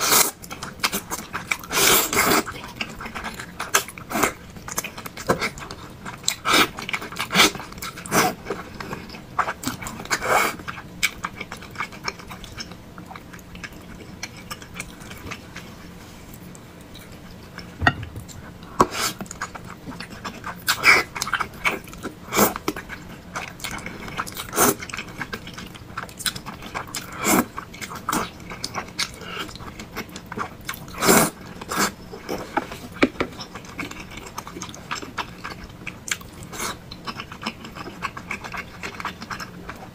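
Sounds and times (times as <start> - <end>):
wet chewing and mouth smacks: 33.4 - 39.9.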